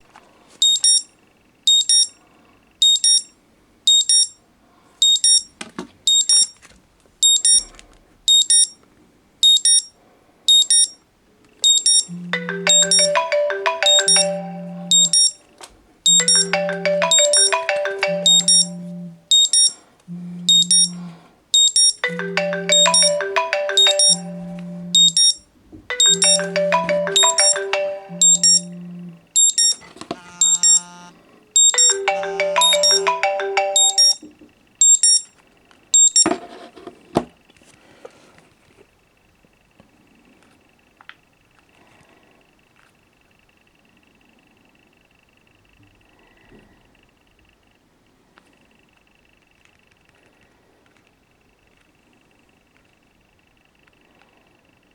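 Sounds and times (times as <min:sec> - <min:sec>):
high alarm beeps in pairs: 0:02.8 - 0:03.2, 0:03.9 - 0:04.3, 0:05.0 - 0:05.4, 0:10.5 - 0:10.9, 0:18.2 - 0:22.0, 0:28.2 - 0:31.9
melodic phone ringtone: 0:12.0 - 0:15.4, 0:16.1 - 0:21.2, 0:22.0 - 0:34.2.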